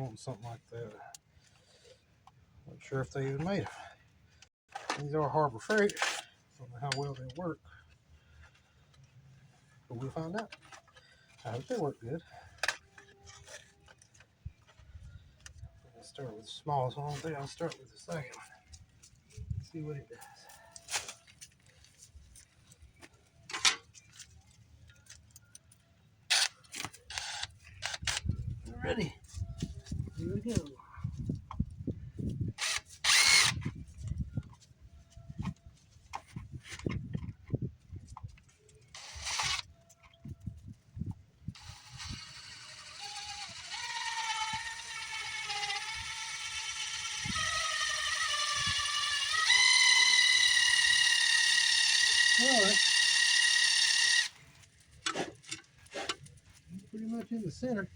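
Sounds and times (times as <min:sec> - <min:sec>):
drill bits clicking and rattling: 0:26.3 - 0:28.3, 0:32.6 - 0:33.7, 0:39.0 - 0:39.7, 0:41.6 - 0:54.4.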